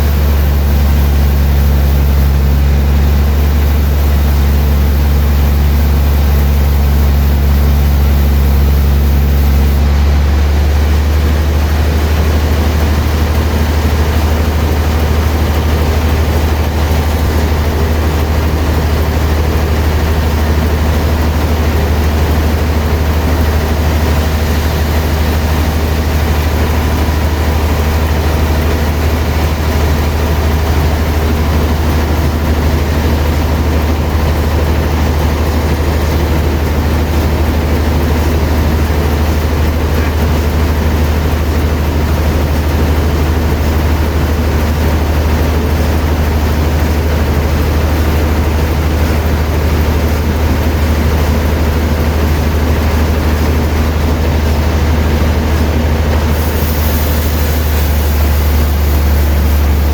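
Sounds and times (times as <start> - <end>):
sawmill machinery droning: 0.0 - 59.9.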